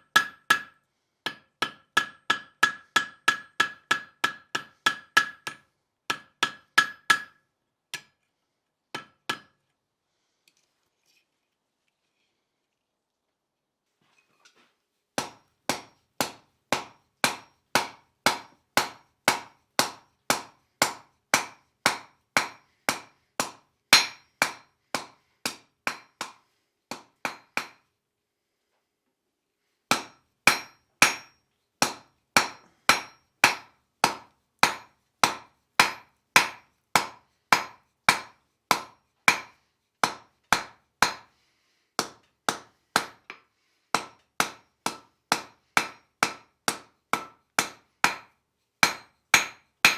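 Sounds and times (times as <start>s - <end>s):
hammer striking iron on anvil: 0.1s - 0.7s, 1.3s - 7.4s, 9.0s - 9.5s, 15.2s - 27.8s, 29.9s - 41.3s, 42.0s - 43.4s, 44.0s - 49.9s.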